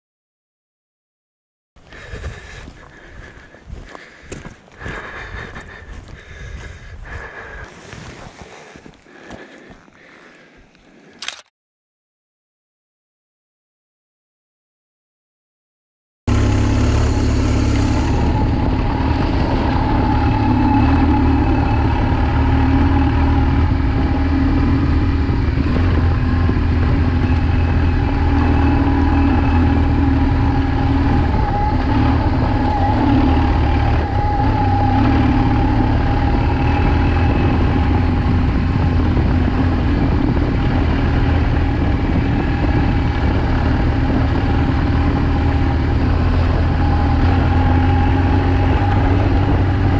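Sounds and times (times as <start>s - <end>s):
motorcycle engine running: 16.3s - 49.9s.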